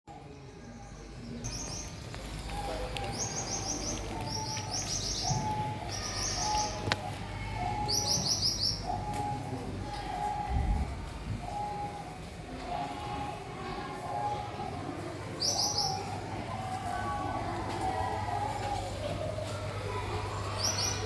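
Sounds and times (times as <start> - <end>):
birds chirping high: 0.1 - 21.0
doves cooing: 1.4 - 21.0.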